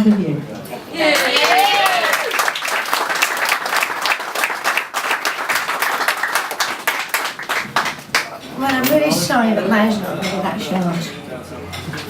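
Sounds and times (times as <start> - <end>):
audience applauding: 1.0 - 8.4.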